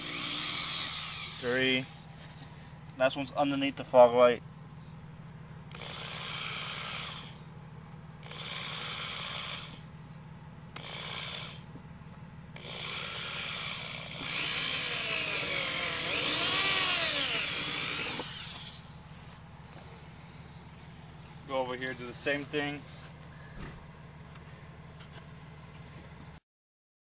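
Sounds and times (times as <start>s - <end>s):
power drill drilling plastic: 0.0s - 1.9s, 5.7s - 7.4s, 10.8s - 11.6s, 12.6s - 18.9s.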